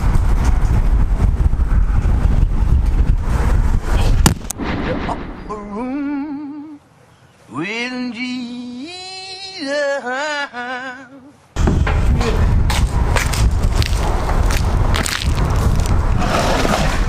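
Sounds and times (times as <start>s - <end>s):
person singing with wide vibrato: 5.4s - 11.6s.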